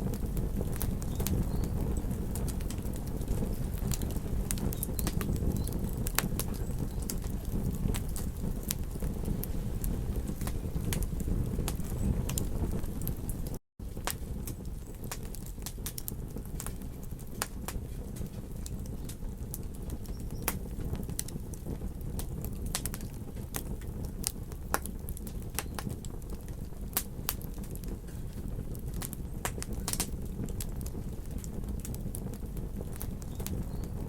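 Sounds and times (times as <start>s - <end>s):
campfire crackling and popping: 0.0s - 34.0s.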